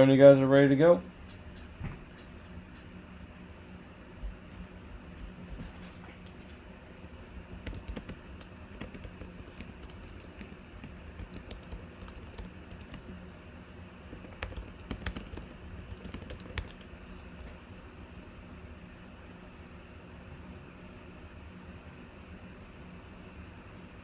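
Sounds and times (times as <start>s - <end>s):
steady low hum: 0.0s - 20.9s
keyboard key clicks: 7.4s - 13.2s, 14.1s - 16.9s.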